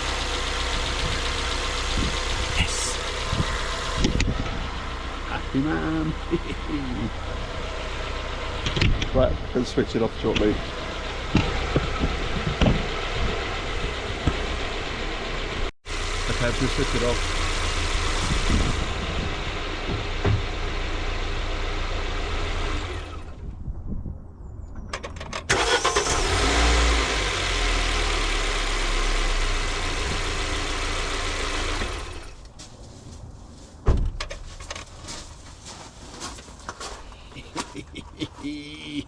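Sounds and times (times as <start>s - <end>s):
loud steady running noise: 0.0s - 23.3s
car engine idling: 0.0s - 23.4s, 25.5s - 32.5s.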